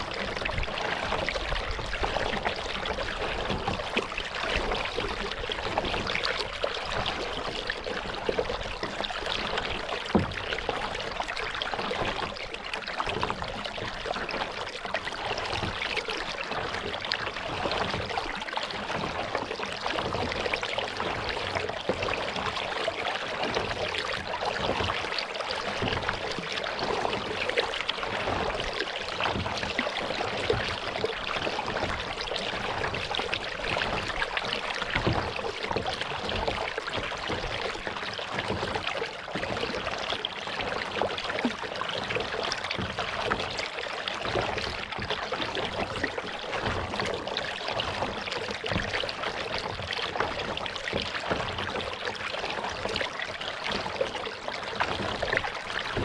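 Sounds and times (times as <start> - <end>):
water lapping around kayak: 0.0 - 56.0.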